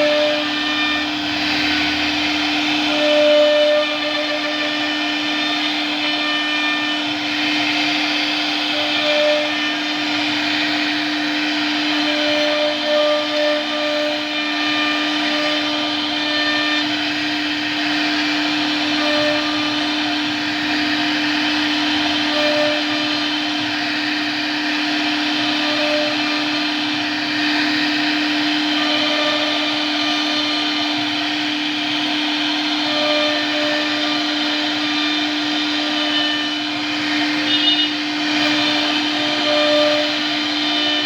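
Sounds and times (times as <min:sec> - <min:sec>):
cnc router spindle whining: 0:00.0 - 0:41.0
short high machine tones: 0:37.4 - 0:38.9.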